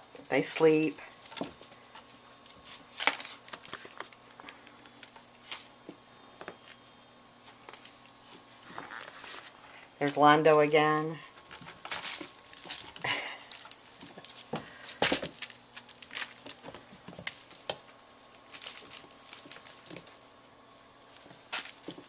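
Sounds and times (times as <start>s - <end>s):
kittens' paws tapping and scrabbling: 0.3s - 5.3s, 10.2s - 22.0s.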